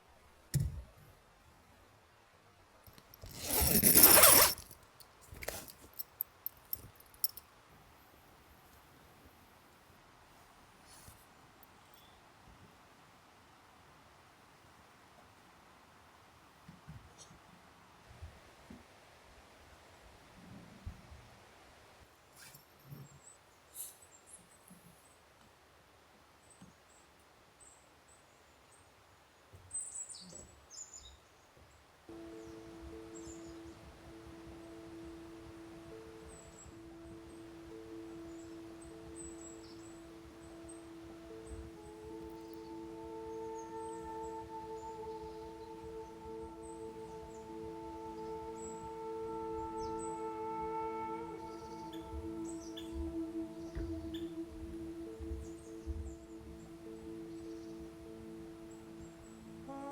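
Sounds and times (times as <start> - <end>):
faint outdoor ambience: 0.0 - 59.9
songbirds chirping: 26.3 - 59.9
descending bird calls: 32.1 - 59.9.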